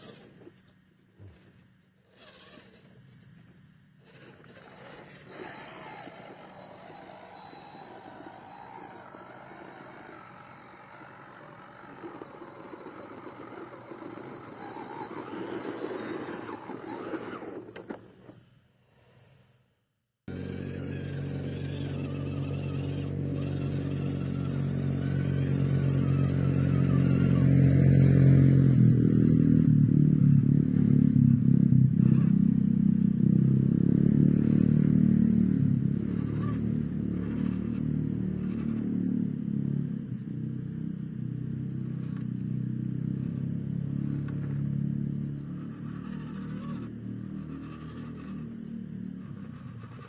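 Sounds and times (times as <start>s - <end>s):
toy truck motor running: 2.0s - 3.0s, 4.0s - 18.0s, 20.3s - 27.7s, 32.0s - 32.4s, 34.4s - 34.9s, 35.9s - 39.2s, 41.7s - 42.3s, 43.1s - 50.0s.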